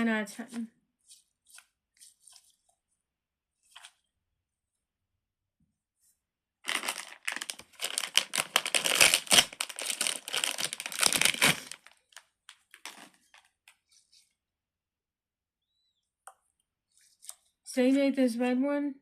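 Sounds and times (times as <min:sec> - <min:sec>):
fidget toy and wrapping crinkling: 0:06.6 - 0:14.2.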